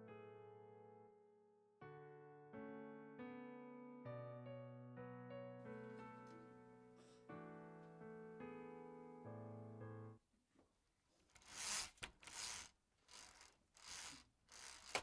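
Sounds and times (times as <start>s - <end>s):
keyboard piano chords: 0.0s - 1.2s, 1.8s - 10.2s.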